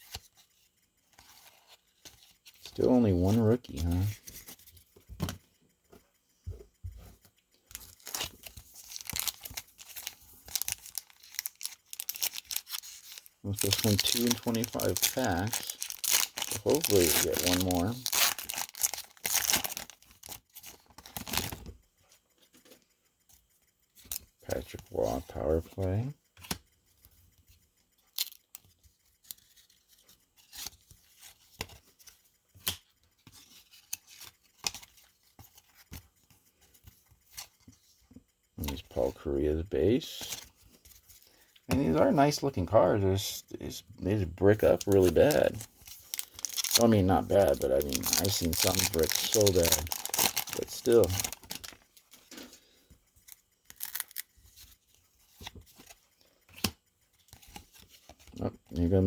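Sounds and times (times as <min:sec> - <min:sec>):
cards flicking and wrapper crinkling: 0:07.7 - 0:21.7, 0:44.1 - 0:52.5, 0:53.2 - 0:58.4.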